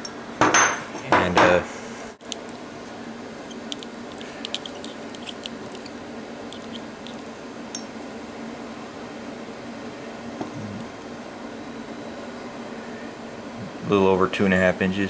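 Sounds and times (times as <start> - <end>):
steady background hum: 0.0 - 15.0
small steel parts clicking: 3.4 - 7.3.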